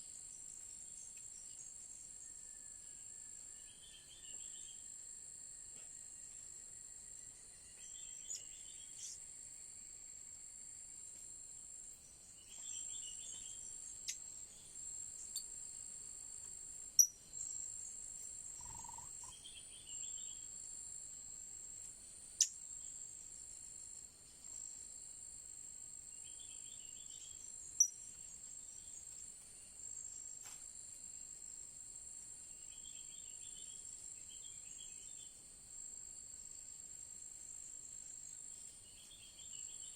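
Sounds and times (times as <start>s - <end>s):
insect drone: 0.0s - 39.9s
bird chirping: 7.6s - 9.3s, 12.3s - 15.5s, 18.6s - 20.5s.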